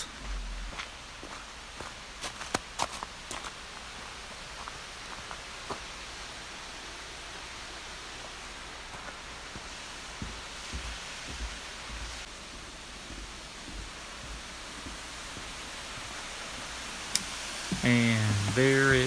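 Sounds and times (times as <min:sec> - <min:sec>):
soft low bumps: 0:00.0 - 0:00.9
waterfall rushing: 0:13.9 - 0:19.0.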